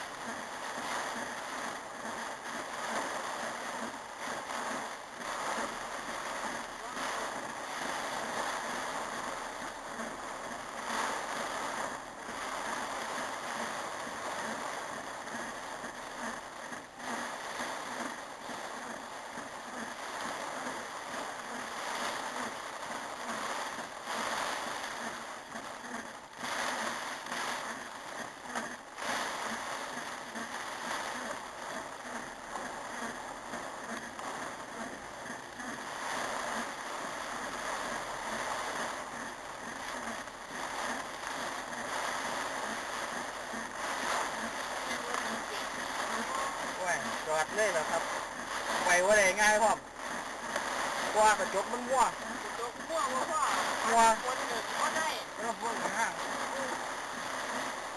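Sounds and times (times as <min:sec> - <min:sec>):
heavy rain pouring: 0:20.6 - 0:57.9.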